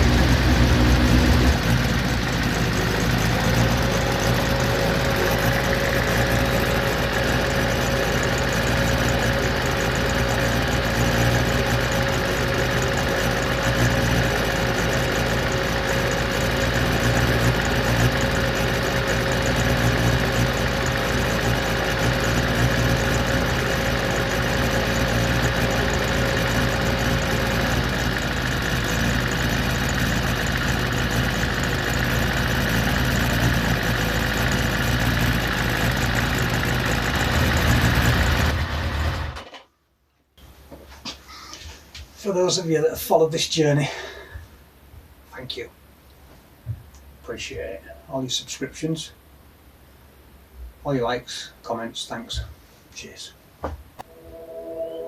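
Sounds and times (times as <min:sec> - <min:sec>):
engine idling: 0:00.0 - 0:39.4
faint whine: 0:54.0 - 0:55.0.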